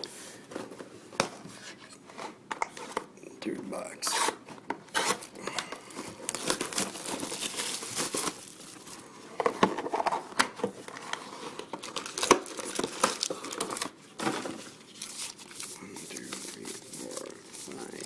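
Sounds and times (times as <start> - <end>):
plastic wrapping crinkling and tearing: 4.9 - 9.1, 9.7 - 18.0.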